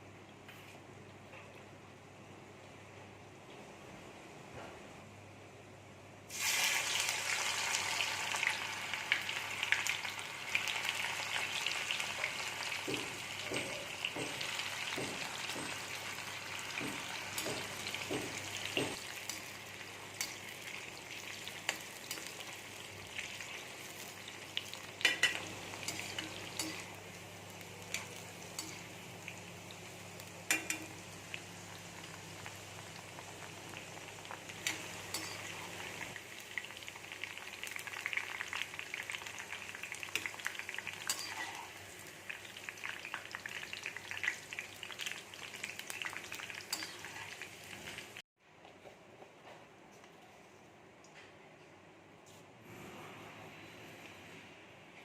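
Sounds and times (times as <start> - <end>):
food sizzling in hot oil: 6.3 - 48.2.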